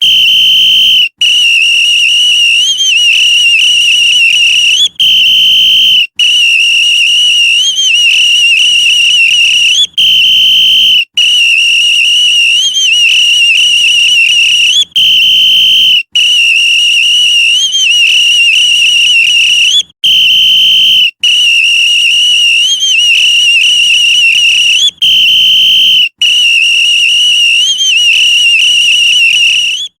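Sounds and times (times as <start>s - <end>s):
police whistle blasts: 0.0s - 30.0s.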